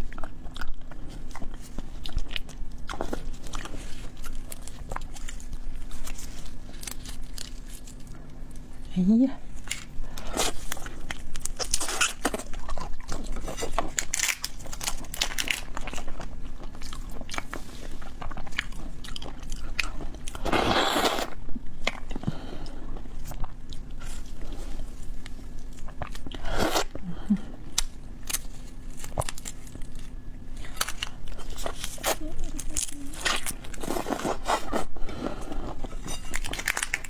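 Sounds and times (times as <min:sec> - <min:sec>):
biting and chewing: 0:09.6 - 0:27.0
shells cracking and crunching: 0:10.7 - 0:16.1, 0:36.2 - 0:37.0.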